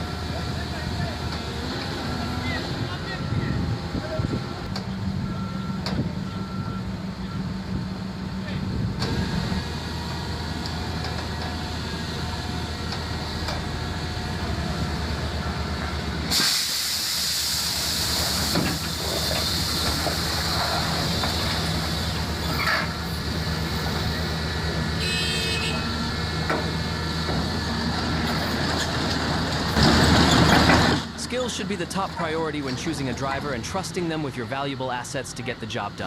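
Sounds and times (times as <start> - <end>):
heavy vehicle engine running: 0.0 - 36.0
loud steady hiss: 16.3 - 22.4.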